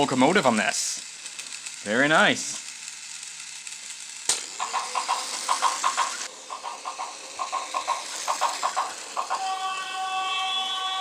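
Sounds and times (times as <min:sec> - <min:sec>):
toy train clickety-clack: 0:00.0 - 0:11.0
electronic horn tone: 0:09.4 - 0:11.0.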